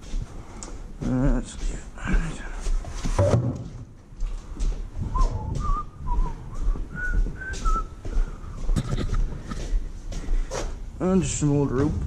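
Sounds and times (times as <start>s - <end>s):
person whistling a tune: 5.1s - 8.0s.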